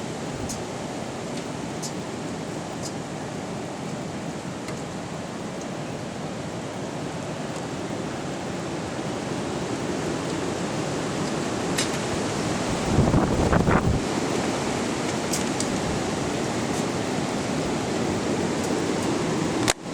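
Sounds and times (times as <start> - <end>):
strong wind blowing: 8.9 - 19.7.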